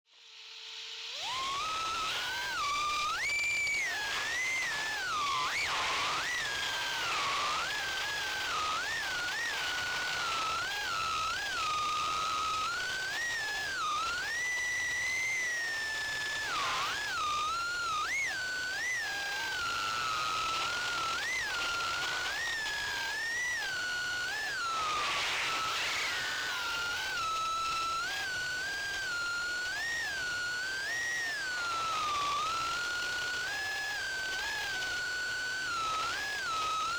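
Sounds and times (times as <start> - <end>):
quadcopter motors whining: 1.1 - 36.9.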